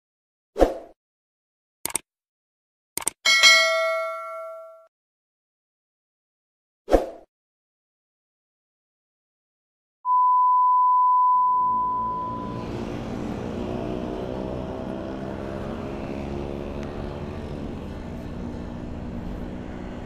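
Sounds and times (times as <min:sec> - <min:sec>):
loud high beep: 0:10.1 - 0:12.7
two-stroke motorcycle engine: 0:12.4 - 0:20.0.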